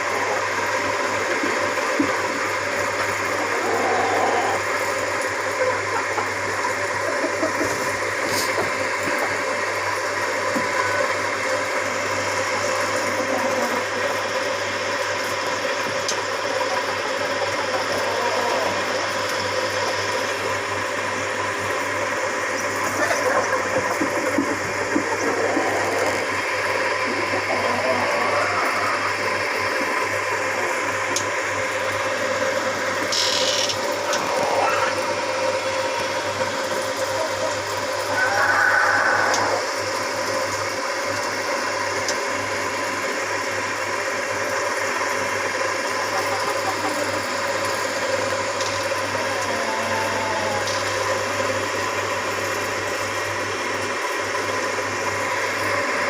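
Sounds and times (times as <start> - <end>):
machine rattling whirring hum: 0.0 - 56.0
small motor humming: 32.2 - 39.7.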